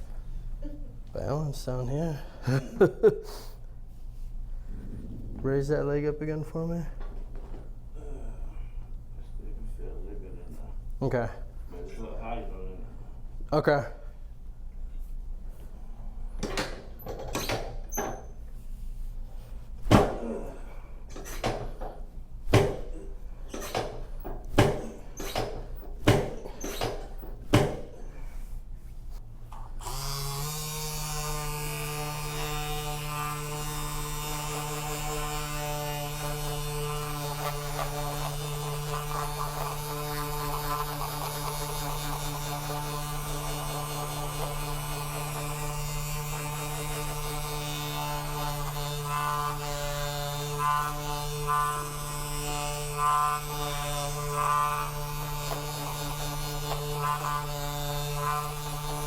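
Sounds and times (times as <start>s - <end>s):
electric buzzing hum: 19.1s - 59.0s
sharp knocks on treatment table: 22.5s - 22.9s, 27.5s - 27.9s.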